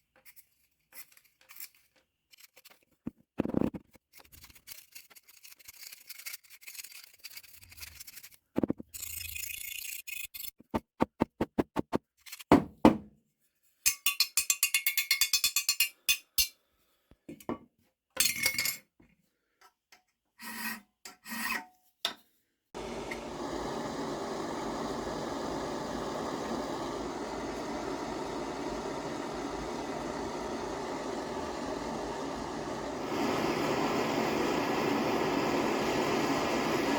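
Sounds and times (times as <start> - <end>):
metal being filed by hand: 4.3 - 12.4
steady machine noise: 22.8 - 36.9.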